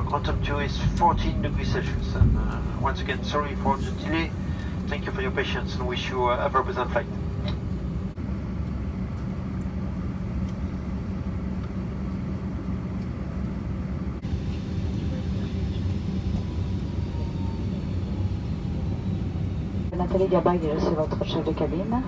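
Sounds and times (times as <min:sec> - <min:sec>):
low hum: 0:00.0 - 0:13.6
cabin ventilation drone: 0:00.0 - 0:22.0.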